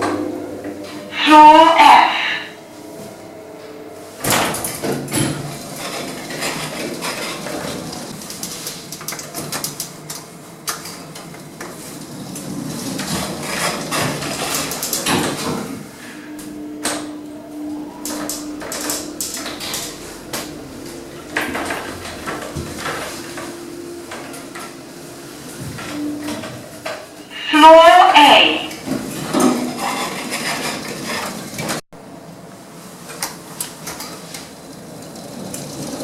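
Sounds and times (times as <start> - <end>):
steady hum: 0.0 - 36.0
lift doors rattling and clanking: 4.2 - 16.0, 16.6 - 31.8, 33.0 - 36.0.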